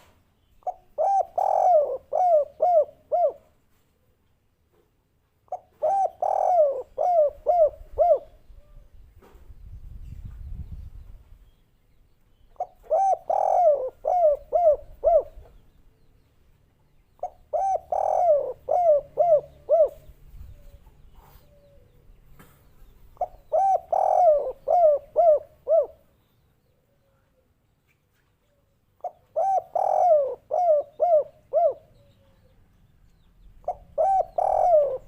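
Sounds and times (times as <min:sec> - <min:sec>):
dove cooing: 0:00.6 - 0:03.5, 0:05.5 - 0:08.8, 0:12.6 - 0:15.6, 0:17.2 - 0:22.0, 0:23.2 - 0:26.1, 0:29.0 - 0:32.6, 0:33.6 - 0:35.0.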